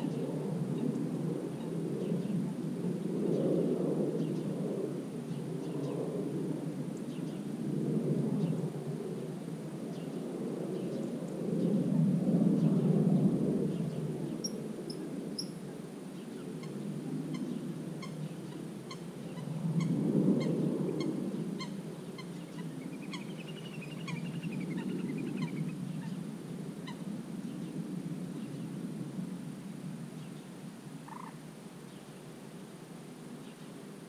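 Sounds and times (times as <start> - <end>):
bird chirping warble: 16.3 - 26.2.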